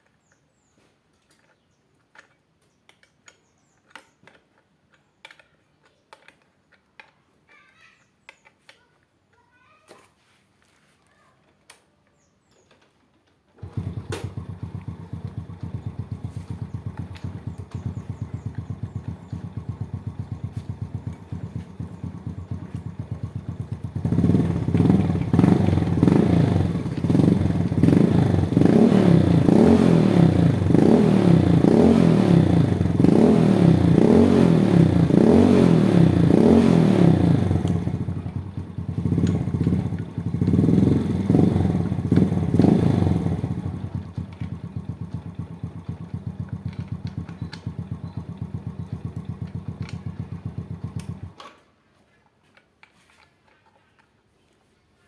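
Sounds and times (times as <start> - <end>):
chainsaw engine idling and revving: 13.6 - 51.4.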